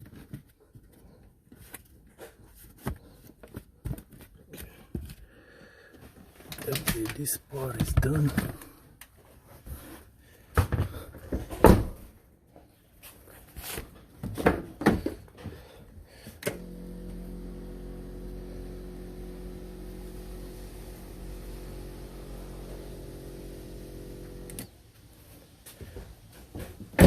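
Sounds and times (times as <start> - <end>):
steady hum: 16.5 - 24.7.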